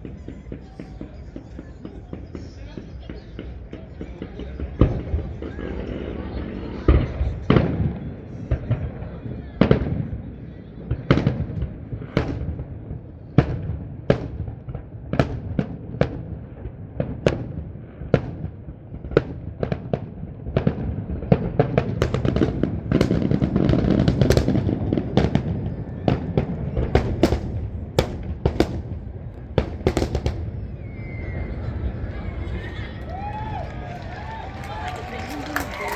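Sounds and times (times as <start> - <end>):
fireworks bangs: 0.0 - 35.9.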